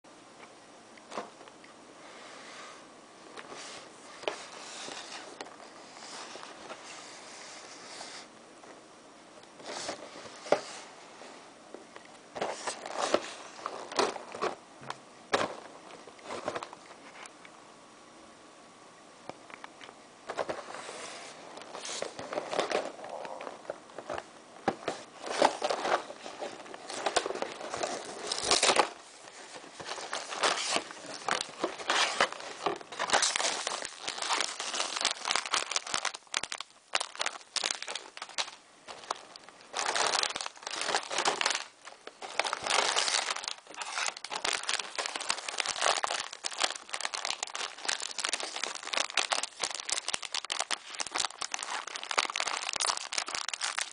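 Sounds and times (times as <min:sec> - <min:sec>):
plastic packaging crinkling: 0:03.3 - 0:07.8, 0:12.3 - 0:14.6, 0:20.3 - 0:53.9.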